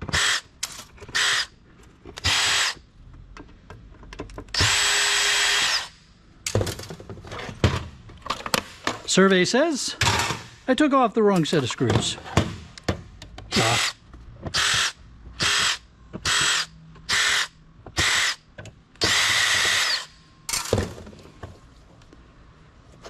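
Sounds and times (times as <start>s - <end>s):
cordless drill whirring: 0.1s - 0.4s, 1.1s - 1.5s, 2.2s - 2.8s, 4.5s - 6.0s, 13.5s - 18.4s, 19.0s - 20.2s.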